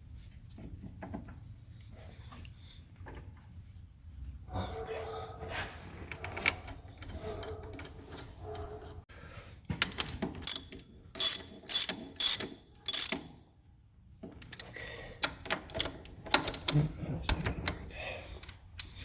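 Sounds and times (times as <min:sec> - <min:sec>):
ratchet wrench clicking: 0:10.0 - 0:13.4.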